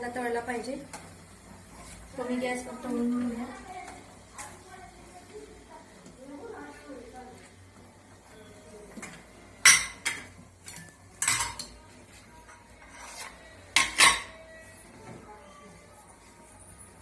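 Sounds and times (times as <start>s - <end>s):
food frying: 0.0s - 14.4s
metal spoon clanking in a pan: 9.0s - 11.8s, 12.4s - 14.5s.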